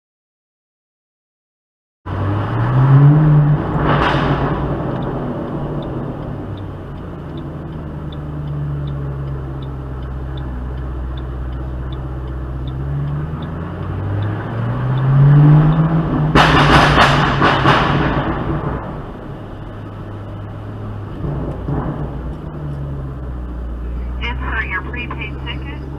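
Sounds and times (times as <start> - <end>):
car engine revving: 2.1 - 25.9
exhaust pops and crackles: 3.6 - 7.9, 15.6 - 25.9.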